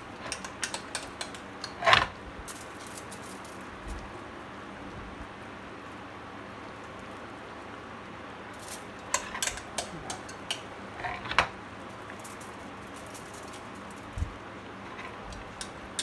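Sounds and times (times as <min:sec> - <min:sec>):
utensil clinking and scraping dish: 0:00.0 - 0:03.7, 0:08.6 - 0:14.1, 0:14.8 - 0:16.0
steady background hiss: 0:00.0 - 0:16.0.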